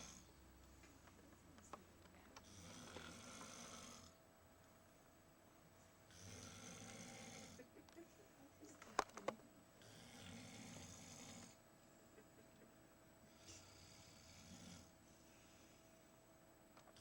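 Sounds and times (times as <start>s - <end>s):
person snoring: 0.0s - 0.3s, 2.4s - 4.2s, 6.1s - 7.6s, 9.8s - 11.6s, 13.3s - 14.9s.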